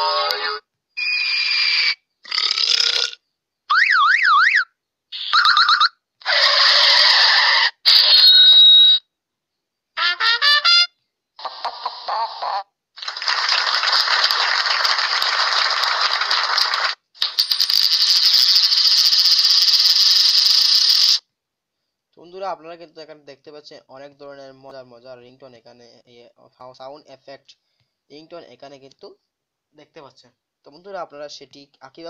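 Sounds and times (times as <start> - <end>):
warbling comedy whistles: 1.0 - 2.0, 3.7 - 9.1.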